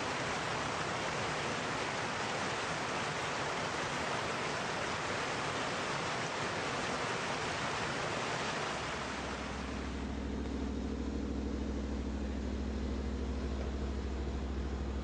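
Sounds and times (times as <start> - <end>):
off-road vehicle engine running: 8.8 - 15.0.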